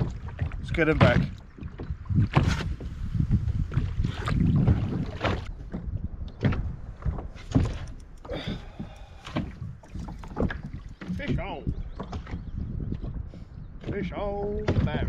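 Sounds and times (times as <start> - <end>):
gear knocking in plastic boat: 3.8 - 13.2.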